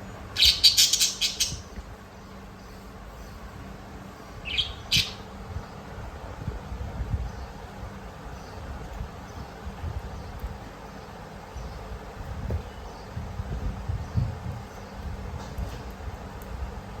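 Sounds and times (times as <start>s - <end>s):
low steady hum: 0.0s - 17.0s
parakeets chirping: 0.3s - 1.7s, 4.4s - 5.3s.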